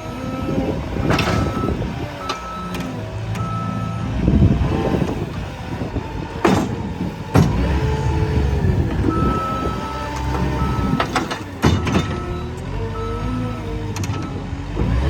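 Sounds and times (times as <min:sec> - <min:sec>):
diesel engine running: 0:00.0 - 0:15.0
backup alarm beeps: 0:09.1 - 0:11.1.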